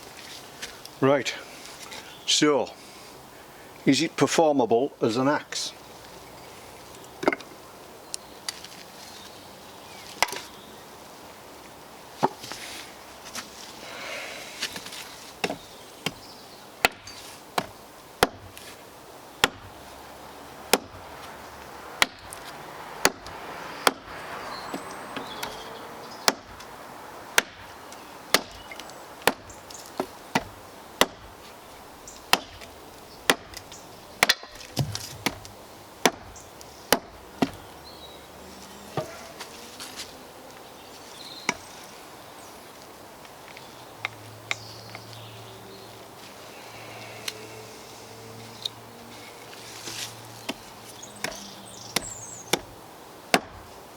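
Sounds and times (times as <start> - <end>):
axe chopping wood: 7.2 - 7.5, 12.2 - 12.5, 14.6 - 16.2, 16.8 - 18.8, 19.4 - 19.8, 20.7 - 21.2, 22.0 - 26.7, 27.3 - 31.4, 32.2 - 37.7, 39.0 - 39.5, 41.4 - 41.7, 50.0 - 53.7.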